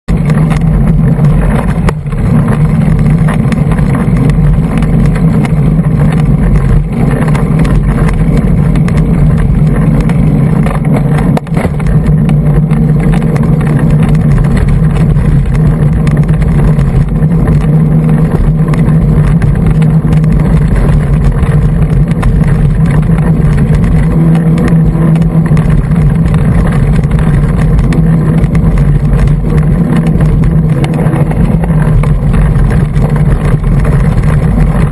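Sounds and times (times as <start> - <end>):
trail vibration rattle: 0.0 - 34.9
wind rumble: 0.0 - 34.9.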